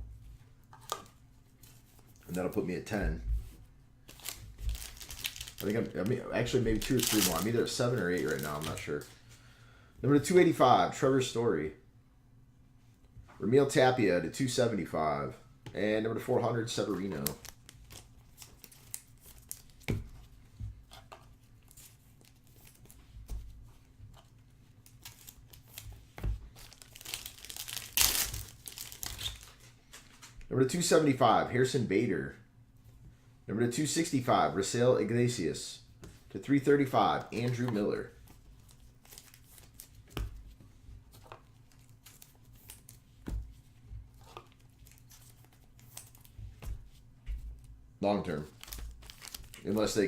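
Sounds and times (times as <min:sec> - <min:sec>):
low steady hum: 0:00.0 - 0:50.0
plastic wrapping crinkling and tearing: 0:04.1 - 0:09.1, 0:24.8 - 0:30.3, 0:38.6 - 0:40.0, 0:48.5 - 0:50.0.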